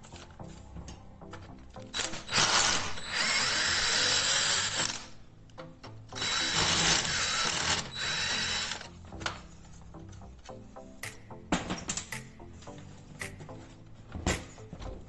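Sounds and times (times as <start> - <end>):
electric drill running: 1.9 - 5.2, 6.1 - 8.9.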